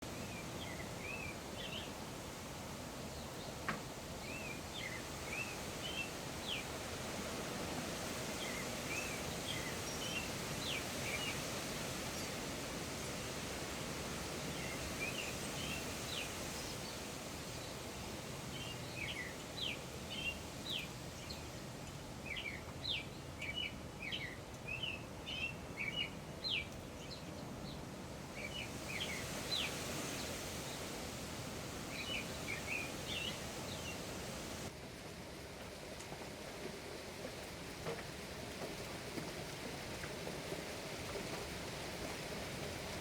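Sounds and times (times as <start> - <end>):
outdoor background noise: 0.0 - 43.0
birds chirping: 31.9 - 34.1.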